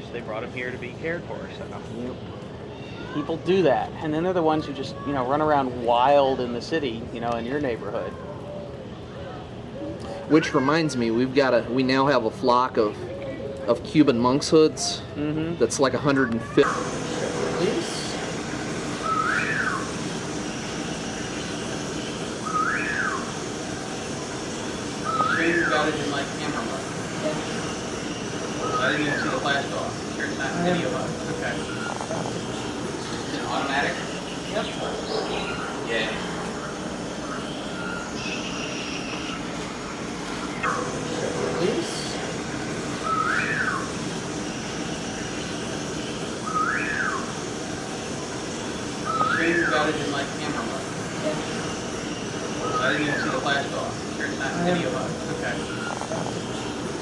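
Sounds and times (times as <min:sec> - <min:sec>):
steady background hum: 0:00.0 - 0:57.0
background hiss: 0:13.8 - 0:57.0
bird whistled call: 0:18.8 - 0:23.4, 0:24.9 - 0:26.3, 0:28.6 - 0:29.6, 0:31.6 - 0:39.5, 0:42.8 - 0:44.3, 0:46.4 - 0:47.4, 0:49.0 - 0:50.0, 0:52.6 - 0:53.6.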